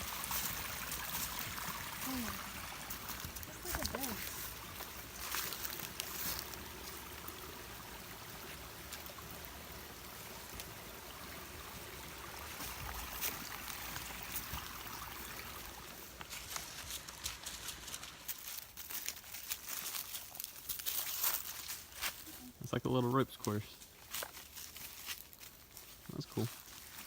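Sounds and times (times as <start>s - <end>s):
footsteps crunching on trail: 0.0s - 7.4s, 12.5s - 22.6s, 23.4s - 27.0s
stream running water: 0.0s - 27.0s.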